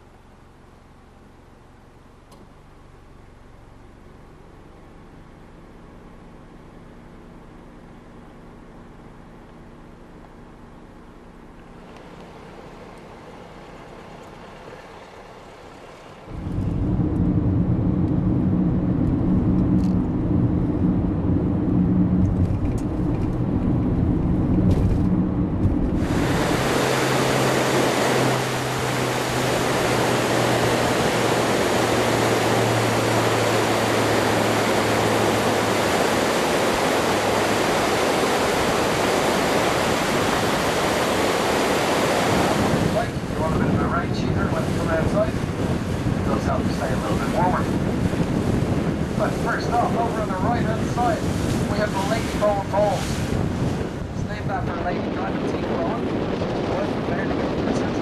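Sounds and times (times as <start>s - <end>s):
low engine drone: 0.0s - 58.0s
wind rushing on the microphone: 16.3s - 58.0s.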